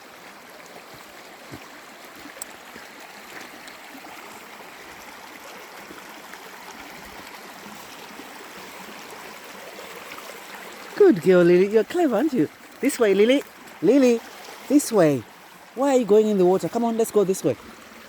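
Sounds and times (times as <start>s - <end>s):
flowing water rushing: 0.0s - 18.0s
faint ticks: 2.2s - 2.6s.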